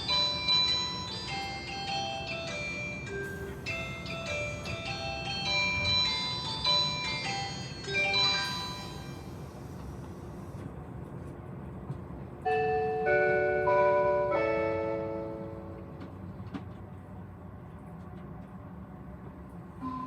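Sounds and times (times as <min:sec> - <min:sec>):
bell-like announcement chime: 0:00.0 - 0:09.2.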